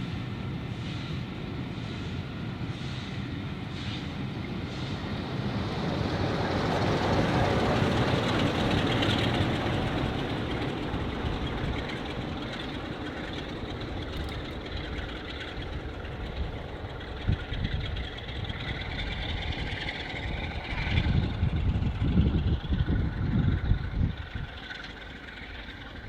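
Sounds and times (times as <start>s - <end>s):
train wheels rumbling on rails: 0.0s - 26.0s.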